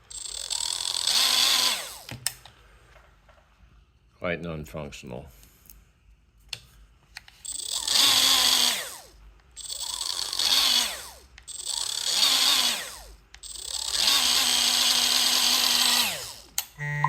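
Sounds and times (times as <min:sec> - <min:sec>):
die grinder whining: 0:00.0 - 0:02.2, 0:07.4 - 0:17.0.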